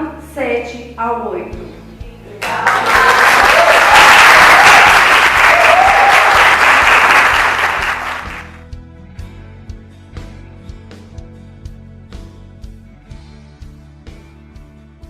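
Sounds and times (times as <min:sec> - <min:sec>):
audience applauding: 0:02.4 - 0:08.6.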